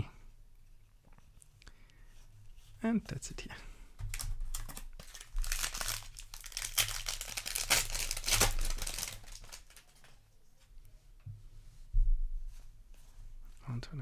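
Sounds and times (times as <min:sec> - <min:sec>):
foil wrapper crinkling and tearing: 0:04.0 - 0:10.1.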